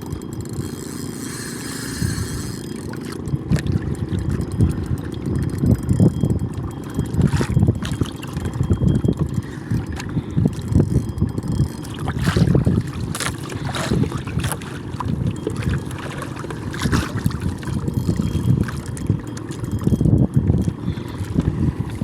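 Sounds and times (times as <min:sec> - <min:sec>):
wind buffeting microphone: 0:03.2 - 0:22.0.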